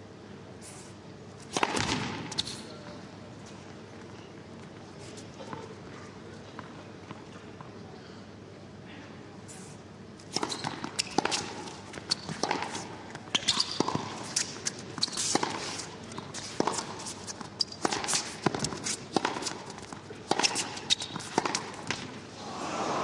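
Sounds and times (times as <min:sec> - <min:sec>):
tennis ball struck by rackets: 0:01.5 - 0:02.4, 0:10.3 - 0:14.5, 0:17.8 - 0:22.2
ball bouncing on court: 0:10.3 - 0:15.6, 0:17.6 - 0:22.2
crowd haze: 0:22.3 - 0:23.0.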